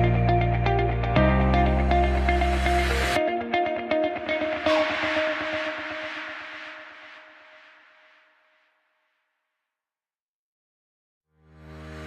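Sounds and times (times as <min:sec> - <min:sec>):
rising noise sweep: 0:01.8 - 0:08.8.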